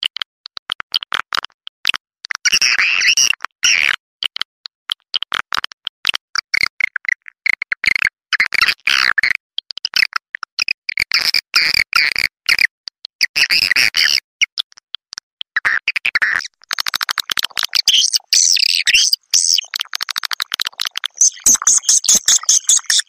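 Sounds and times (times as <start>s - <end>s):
swiftlets chirping and twittering: 16.6s - 23.0s.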